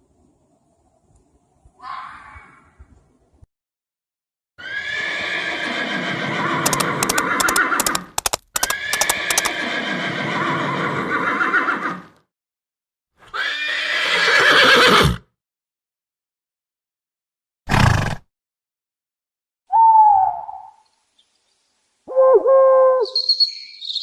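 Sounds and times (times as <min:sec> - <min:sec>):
horse neighing: 0:04.6 - 0:12.1, 0:13.3 - 0:15.2
sharp clicks: 0:06.6 - 0:09.5.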